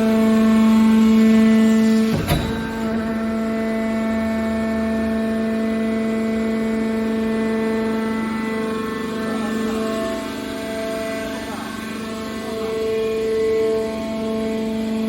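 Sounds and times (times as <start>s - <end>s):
hydraulic pump humming: 1.0s - 5.7s.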